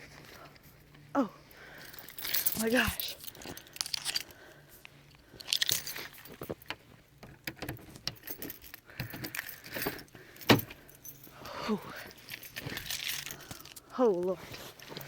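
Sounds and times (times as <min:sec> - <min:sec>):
keys jangling: 0:01.7 - 0:04.4, 0:05.1 - 0:06.8, 0:07.7 - 0:13.9.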